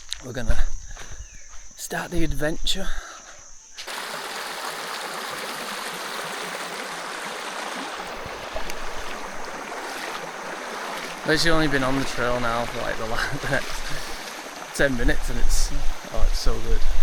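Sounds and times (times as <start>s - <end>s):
stream water rushing: 3.9s - 17.0s.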